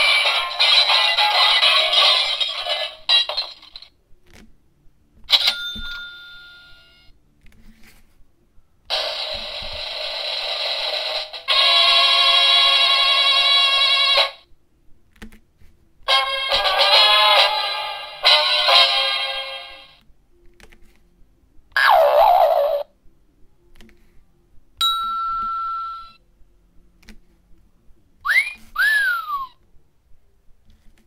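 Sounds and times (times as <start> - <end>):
tinny sound effects from speaker: 21.7 - 22.9.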